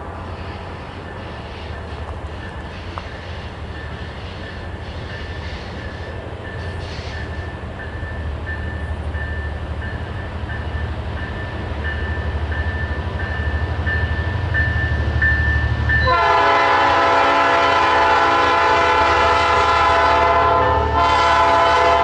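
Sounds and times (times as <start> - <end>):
diesel locomotive rumble: 0.0 - 22.0.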